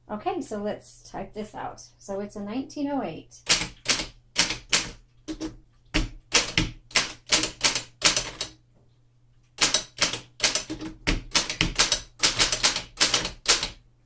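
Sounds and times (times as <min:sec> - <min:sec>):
manual typewriter typing: 0:03.4 - 0:08.6, 0:09.6 - 0:13.8.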